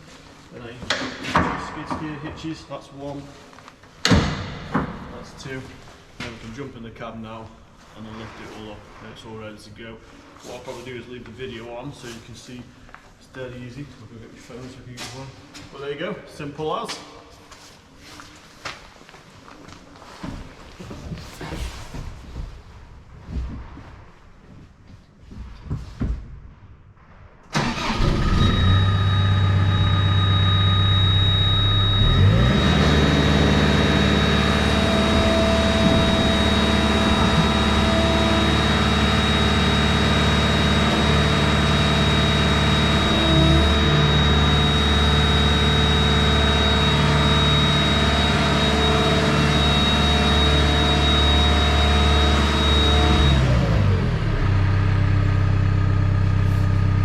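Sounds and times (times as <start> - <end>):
diesel engine running: 27.6 - 57.0
steady high-pitched tone: 28.4 - 39.4.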